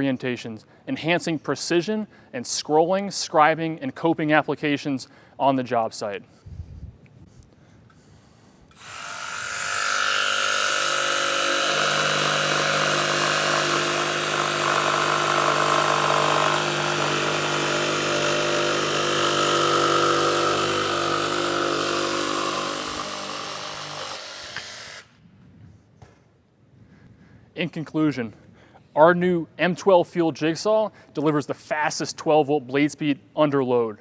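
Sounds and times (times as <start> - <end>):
jigsaw blade cutting: 8.8 - 25.0.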